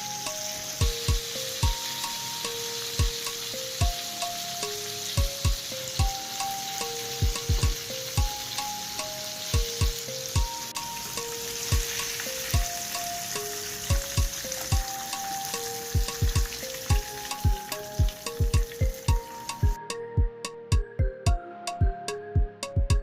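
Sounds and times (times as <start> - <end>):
fish sizzling in hot oil: 0.0 - 19.8
background music held-note melody: 0.0 - 23.0
kick drum beat: 0.8 - 1.8, 5.2 - 5.6, 7.2 - 8.3, 9.6 - 10.5, 13.9 - 14.9, 16.0 - 23.0.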